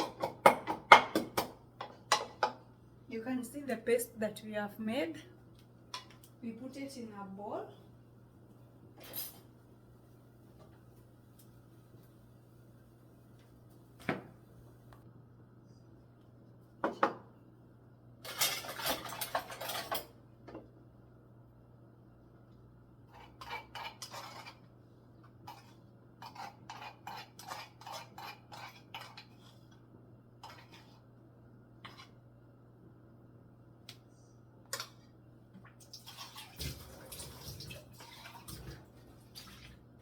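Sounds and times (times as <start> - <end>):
clatter of metal and crockery: 18.2 - 20.2
utensils and dishes clinking: 18.2 - 20.2.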